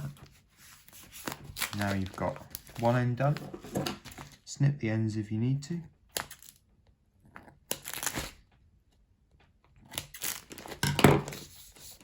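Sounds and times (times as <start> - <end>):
tape and plastic bag crinkling: 1.2 - 3.4, 10.0 - 10.8.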